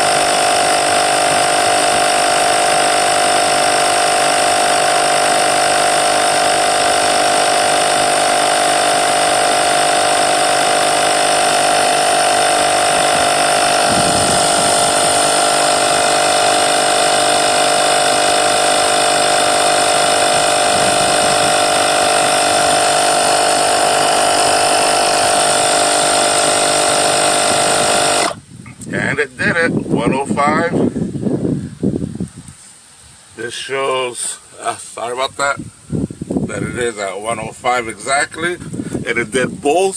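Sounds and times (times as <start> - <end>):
tire inflator compressor running: 0.0 - 28.5.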